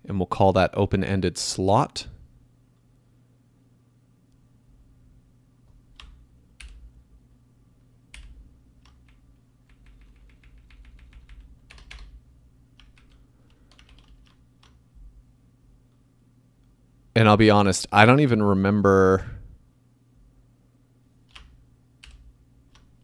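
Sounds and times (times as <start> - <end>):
faint steady hum: 0.0 - 23.0
keyboard typing: 5.8 - 6.9, 8.1 - 14.8, 21.2 - 23.0.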